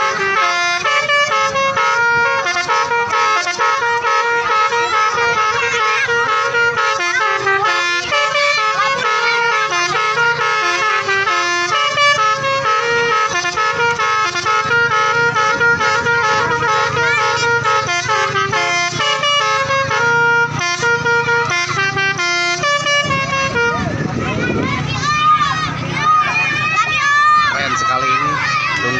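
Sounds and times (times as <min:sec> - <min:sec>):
low engine hum: 0:00.0 - 0:28.9
multi-tone bus horns tooting: 0:00.0 - 0:28.9.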